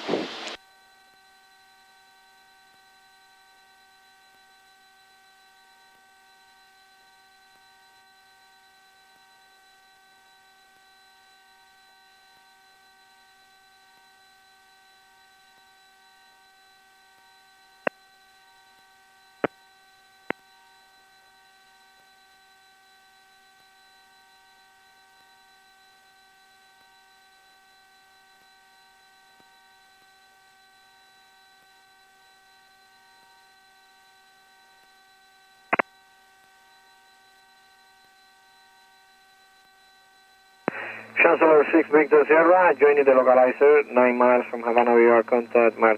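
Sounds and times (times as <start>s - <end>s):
electrical hum in intercom: 40.7s - 45.9s.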